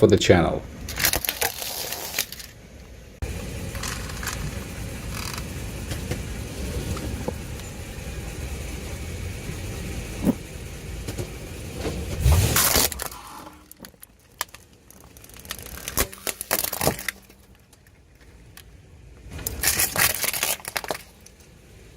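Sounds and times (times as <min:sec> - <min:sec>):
low engine rumble: 0:00.0 - 0:21.9
tyre crunching and cracking objects: 0:00.8 - 0:02.6, 0:11.9 - 0:21.5.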